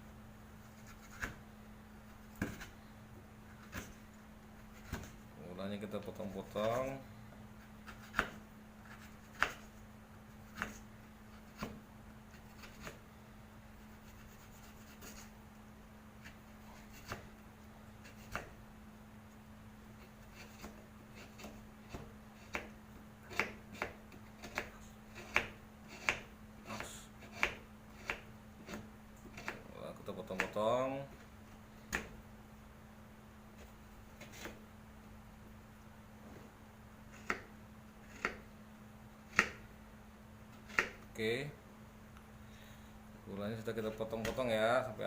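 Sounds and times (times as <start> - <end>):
steady low hum: 0.0 - 45.0
knife chopping sugar: 23.3 - 29.6.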